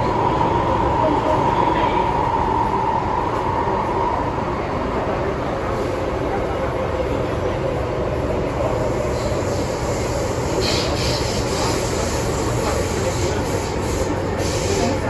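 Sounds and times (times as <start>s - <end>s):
train wheels rumbling: 0.0s - 15.0s
brief hisses: 10.4s - 15.0s.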